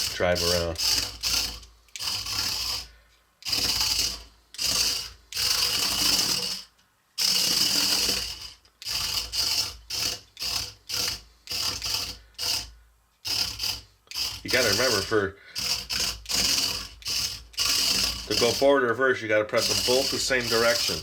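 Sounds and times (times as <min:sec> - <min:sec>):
toy robot motor whirring: 0:00.0 - 0:18.8, 0:19.6 - 0:21.0.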